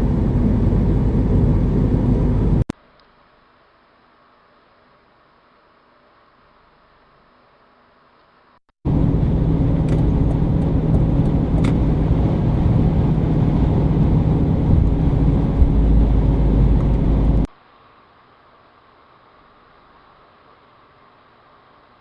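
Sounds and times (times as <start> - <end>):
car engine running: 0.0 - 2.7, 8.9 - 17.5.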